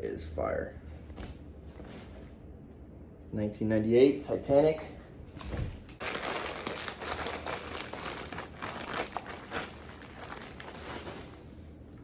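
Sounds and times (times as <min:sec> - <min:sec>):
plastic packaging crinkling: 0:06.0 - 0:11.5.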